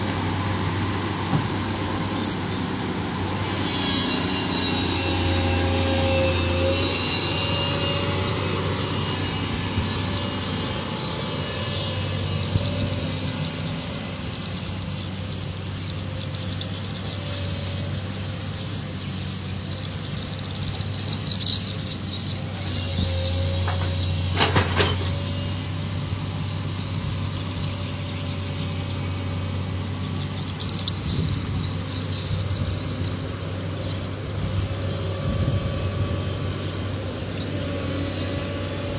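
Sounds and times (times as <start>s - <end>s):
heavy diesel machinery running: 0.0s - 38.9s
thin high squeals: 0.2s - 29.3s, 30.2s - 36.2s
short metallic clatter: 23.6s - 25.4s.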